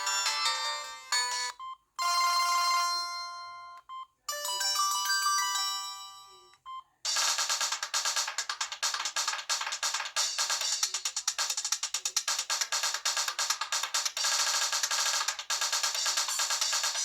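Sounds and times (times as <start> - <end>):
held chiming notes: 0.0 - 6.4
phone ringtone melody: 0.0 - 6.6.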